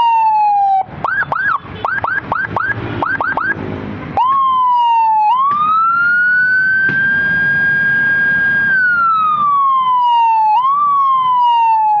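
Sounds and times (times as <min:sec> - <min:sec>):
electronic siren wailing: 0:00.0 - 0:03.6, 0:04.2 - 0:12.0.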